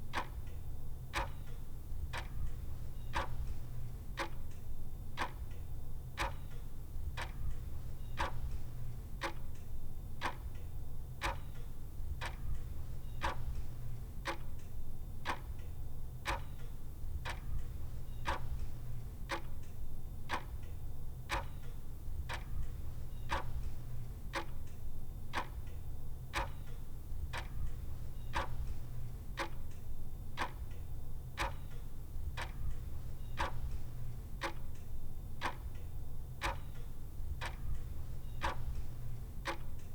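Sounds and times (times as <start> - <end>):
clock ticking: 17.2 - 18.7, 22.3 - 24.6, 26.3 - 29.8, 30.4 - 30.8, 31.4 - 31.8, 32.4 - 34.8, 35.4 - 35.8, 36.4 - 39.9.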